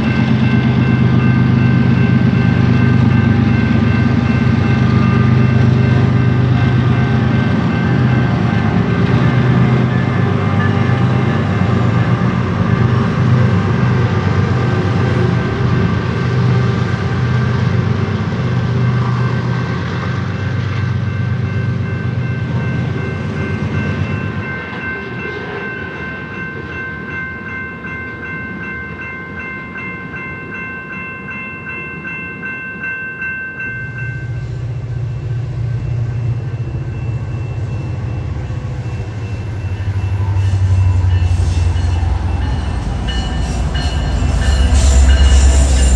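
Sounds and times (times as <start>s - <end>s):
diesel locomotive engine drone: 0.0s - 26.7s, 33.7s - 45.9s
steady high tones ringing: 22.0s - 45.9s
train rolling rumble: 34.2s - 45.9s.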